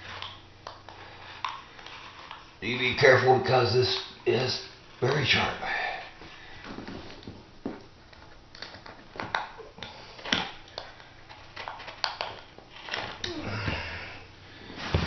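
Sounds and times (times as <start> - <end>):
vinyl flooring rustling: 6.1 - 15.0.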